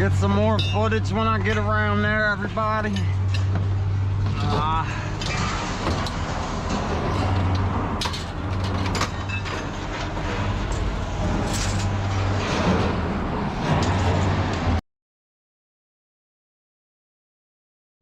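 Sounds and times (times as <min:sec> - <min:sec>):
truck engine idling: 0:00.0 - 0:13.5.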